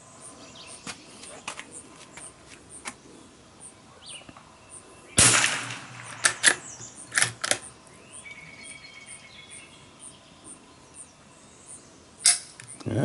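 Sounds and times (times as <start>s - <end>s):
insects chirping: 0.0s - 13.0s
rifle shot: 5.2s - 7.6s
rifle bolt clicking: 6.0s - 7.7s.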